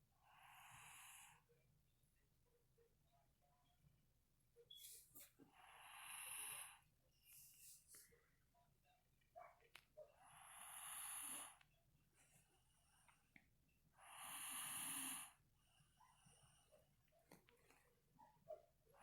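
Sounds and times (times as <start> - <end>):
person snoring: 10.3 - 11.6, 14.0 - 15.3.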